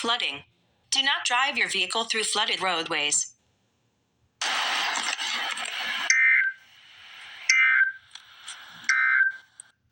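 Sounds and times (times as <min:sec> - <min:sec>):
two-tone digital screeches: 0:08.7 - 0:09.6.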